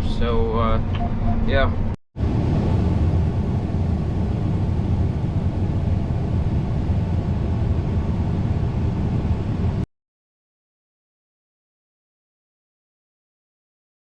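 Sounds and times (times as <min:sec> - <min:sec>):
combine harvester engine drone: 0:00.0 - 0:09.8.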